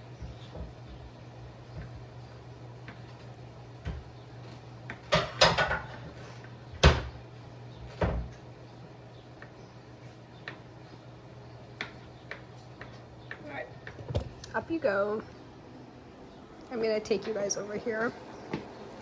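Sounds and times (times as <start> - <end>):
steady low hum: 0.0 - 19.0
kitchen knocks and clatter: 3.8 - 4.1, 4.9 - 7.2, 7.8 - 8.4, 11.8 - 14.5.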